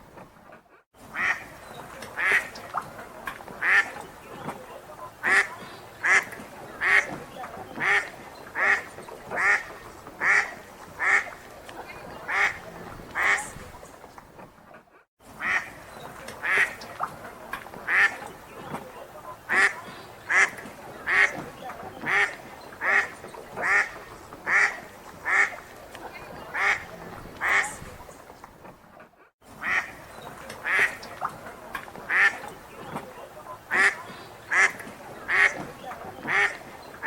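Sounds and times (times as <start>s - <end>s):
duck quacking: 1.1s - 2.6s, 3.6s - 11.4s, 12.0s - 13.6s, 15.4s - 15.8s, 16.4s - 16.8s, 17.9s - 18.3s, 19.3s - 27.8s, 29.6s - 30.0s, 30.6s - 31.3s, 32.0s - 36.7s.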